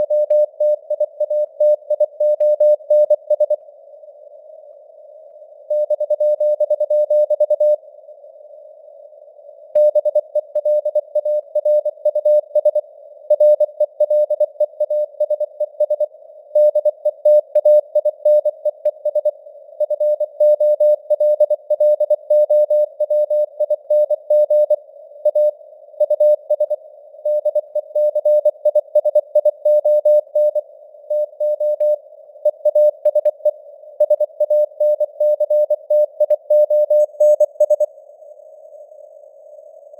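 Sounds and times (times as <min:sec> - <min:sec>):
faint radio noise hiss: 0:07.8 - 0:09.7, 0:16.1 - 0:16.6, 0:36.9 - 0:39.9.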